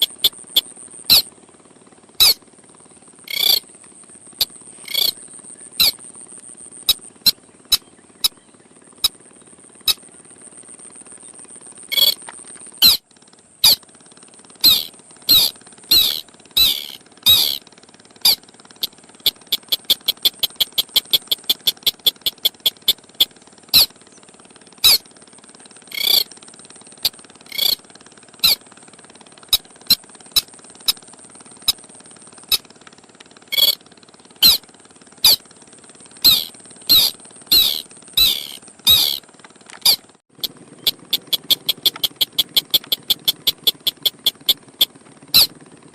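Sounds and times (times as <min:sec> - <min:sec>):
bird calling: 0:00.0 - 0:01.3, 0:02.2 - 0:02.4, 0:03.3 - 0:03.6, 0:04.4 - 0:06.0, 0:06.8 - 0:08.4, 0:11.9 - 0:13.0, 0:13.6 - 0:13.8, 0:14.6 - 0:17.6, 0:18.2 - 0:23.9, 0:24.8 - 0:25.0, 0:25.9 - 0:26.3, 0:27.0 - 0:27.8, 0:33.5 - 0:33.8, 0:34.4 - 0:34.6, 0:35.2 - 0:35.4, 0:36.2 - 0:45.5.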